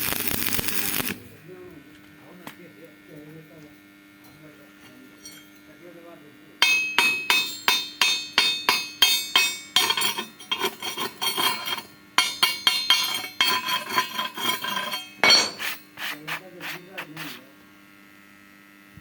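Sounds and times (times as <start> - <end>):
hammer striking steel: 6.6 - 15.8.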